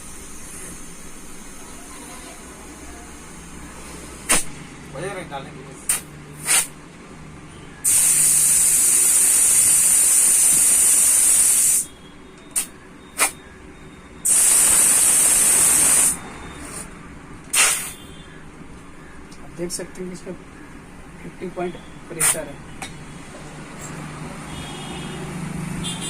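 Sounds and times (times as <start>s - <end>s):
compressed air hissing into tyre: 0.0s - 3.5s, 5.9s - 6.8s, 7.8s - 11.9s, 12.5s - 13.4s, 14.2s - 16.9s, 17.5s - 18.1s
sharp puffs of air: 2.6s - 4.6s, 5.8s - 6.8s, 7.8s - 12.0s, 12.6s - 13.4s, 14.2s - 18.2s, 22.1s - 22.6s.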